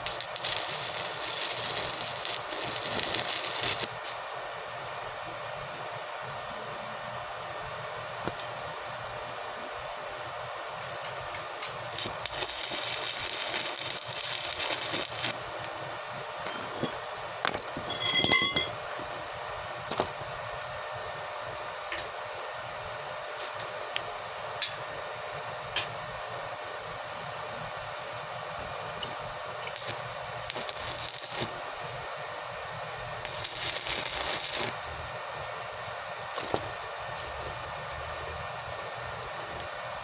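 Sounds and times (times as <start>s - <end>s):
welding arc crackling: 0.0s - 4.2s, 11.6s - 16.5s, 29.7s - 32.1s, 33.2s - 35.5s, 36.3s - 37.8s
fan hum: 0.0s - 40.0s
metal clinking on metal: 16.4s - 17.1s, 17.8s - 18.8s.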